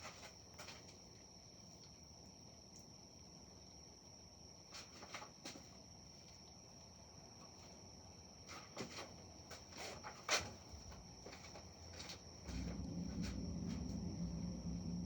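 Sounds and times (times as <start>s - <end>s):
high-pitched whine: 12.5s - 15.0s.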